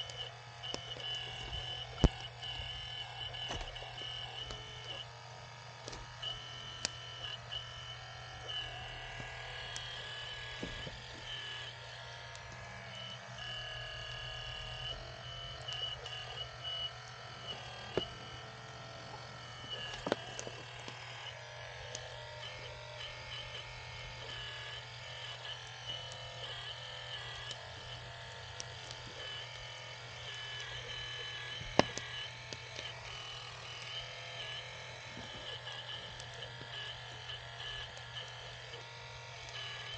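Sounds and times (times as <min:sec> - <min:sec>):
electric pump motor whining: 0:00.0 - 0:39.9
sharp clicks and knocks: 0:19.0 - 0:22.2, 0:30.2 - 0:38.6.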